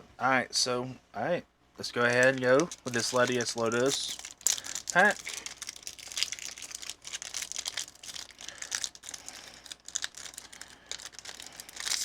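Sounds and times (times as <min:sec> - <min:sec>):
foil wrapper crinkling: 0:02.0 - 0:12.0.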